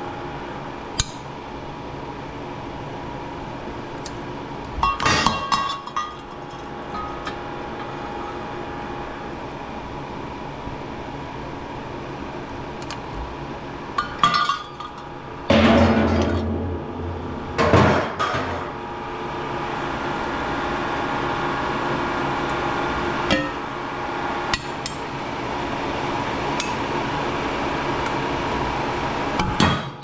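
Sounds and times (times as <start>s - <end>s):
hand tools striking scrap metal: 15.5s - 18.7s.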